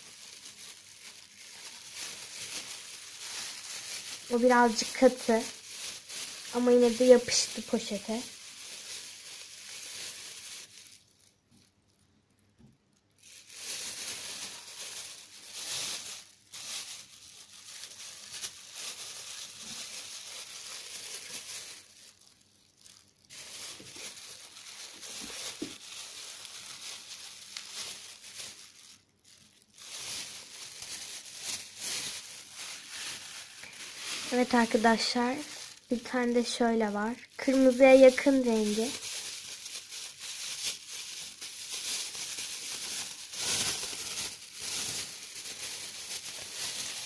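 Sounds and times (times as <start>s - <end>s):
plastic bag crinkling: 0.0s - 47.0s.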